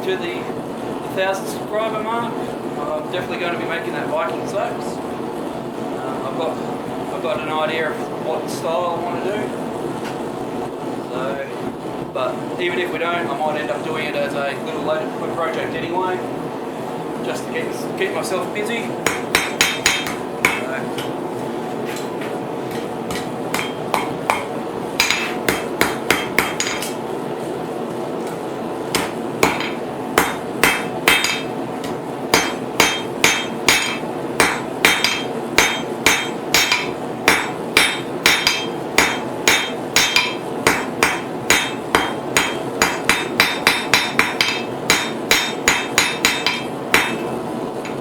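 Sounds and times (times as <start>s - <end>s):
hammer striking steel on anvil: 19.1s - 21.2s, 22.7s - 27.0s, 29.0s - 48.0s.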